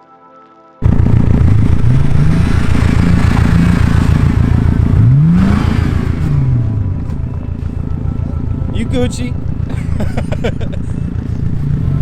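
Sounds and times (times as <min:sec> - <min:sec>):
car engine revving hard: 0:00.8 - 0:07.1, 0:09.6 - 0:12.0
low rumble: 0:00.8 - 0:12.0.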